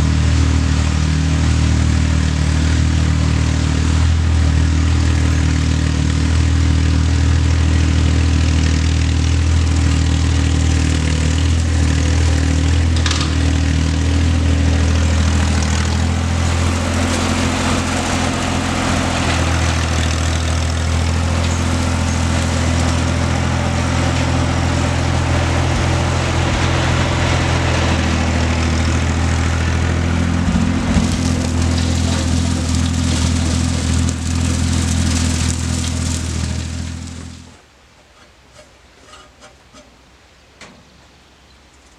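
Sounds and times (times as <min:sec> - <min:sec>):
riding mower engine running: 0:00.0 - 0:41.9.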